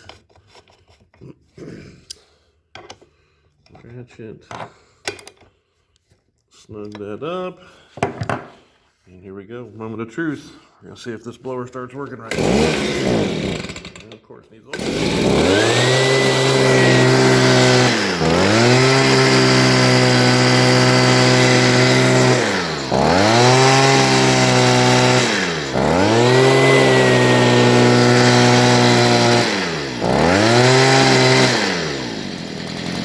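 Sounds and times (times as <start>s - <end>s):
leaf blower engine revving: 12.2s - 33.0s.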